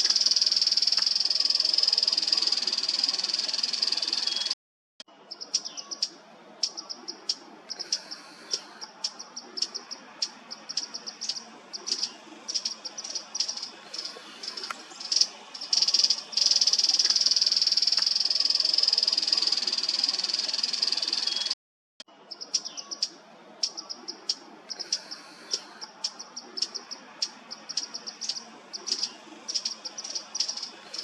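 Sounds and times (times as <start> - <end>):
sharp ticks: 0.0 - 4.2, 6.6 - 21.1, 23.6 - 31.0
high-pitched insect buzz: 0.0 - 4.5, 10.8 - 21.5.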